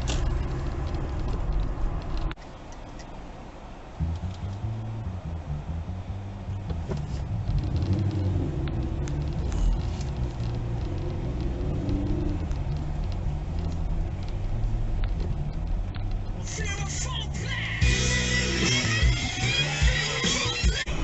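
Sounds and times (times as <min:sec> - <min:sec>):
vehicle engine drone and road rumble: 0:00.0 - 0:21.0.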